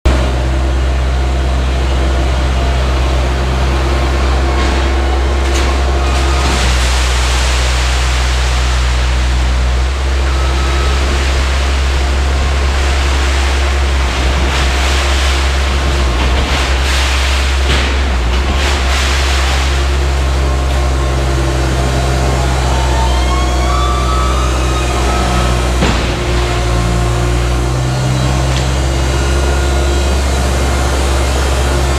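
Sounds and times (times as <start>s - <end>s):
diesel engine running: 0.0s - 31.9s
faint high whining: 20.5s - 25.8s.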